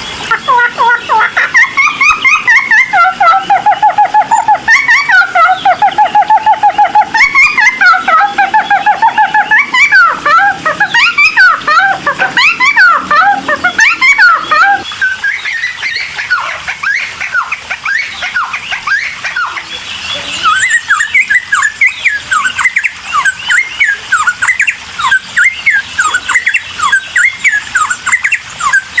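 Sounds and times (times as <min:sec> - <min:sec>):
songbird chattering song: 0:00.0 - 0:29.0.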